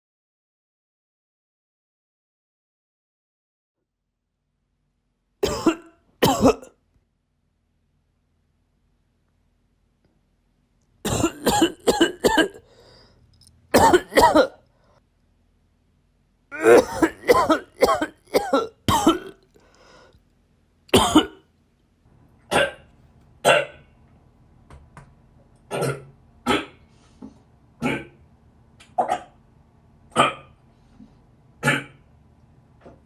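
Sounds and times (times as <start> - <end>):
person coughing: 5.4 - 6.7, 11.1 - 12.8, 13.8 - 14.6, 16.5 - 19.5, 20.9 - 21.4.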